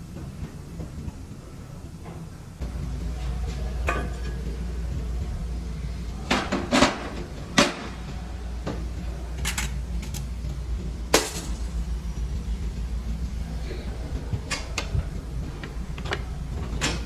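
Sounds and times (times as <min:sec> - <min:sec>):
steady low hum: 0:00.0 - 0:17.0
metal tools clinking and clanking: 0:09.4 - 0:10.3.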